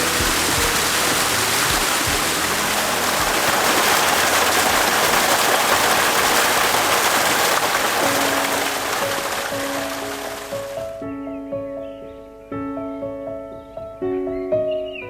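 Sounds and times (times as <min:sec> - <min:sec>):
river rushing over rocks: 0:00.0 - 0:11.0.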